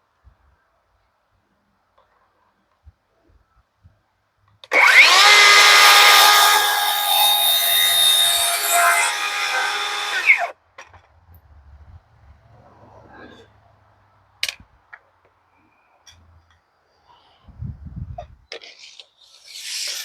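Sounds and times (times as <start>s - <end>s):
power saw cutting wood: 4.6s - 10.5s, 18.8s - 20.0s.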